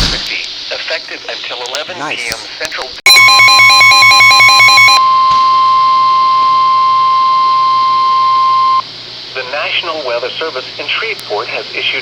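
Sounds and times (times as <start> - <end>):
digital data burst: 3.1 - 5.1
high alarm tone: 3.1 - 8.8.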